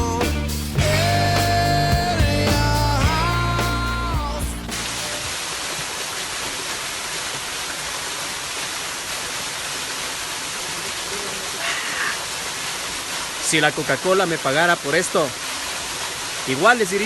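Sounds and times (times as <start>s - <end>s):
waterfall pouring: 4.0s - 17.0s.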